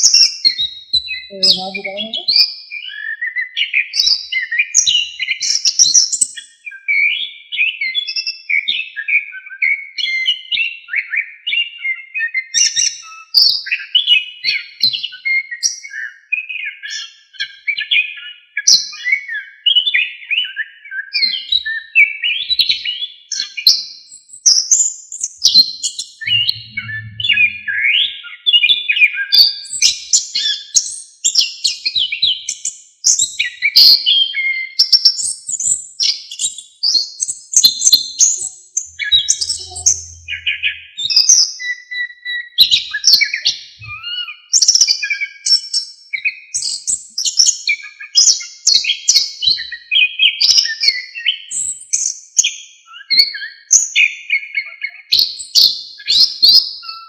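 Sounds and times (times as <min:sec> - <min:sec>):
thrush singing warbling phrases: 0:26.2 - 0:27.8, 0:39.0 - 0:41.0.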